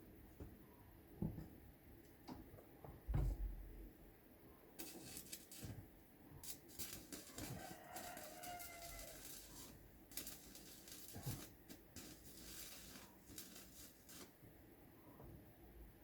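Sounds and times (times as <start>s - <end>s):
soft thump: 3.1s - 3.6s
faint scraping and rustling: 4.8s - 14.4s.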